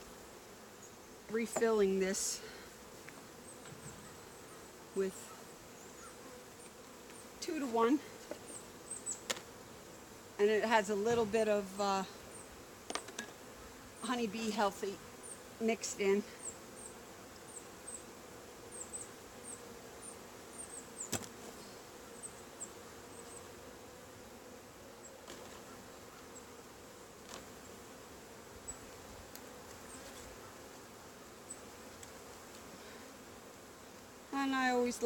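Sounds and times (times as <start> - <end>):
bees buzzing: 0.0 - 35.0.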